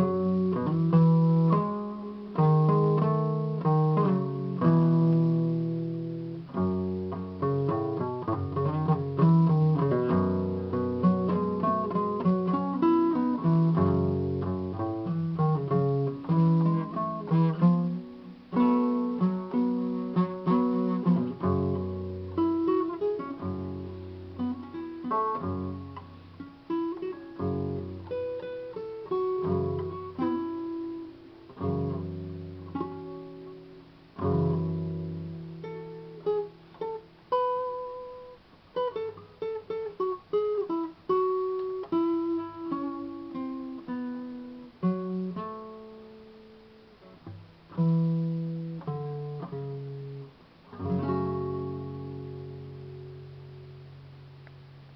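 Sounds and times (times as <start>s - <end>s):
guitar plucked notes: 0.0s - 54.9s.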